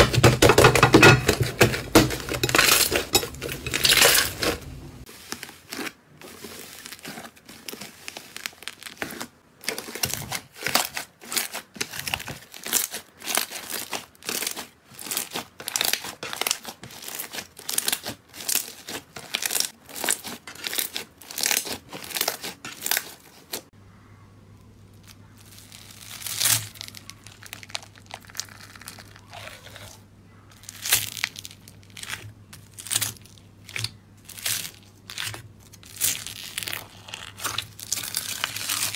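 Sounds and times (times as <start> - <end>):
low steady hum: 0.0 - 5.2, 23.8 - 38.9
crunchy slime crackling: 0.0 - 23.7, 24.5 - 38.9.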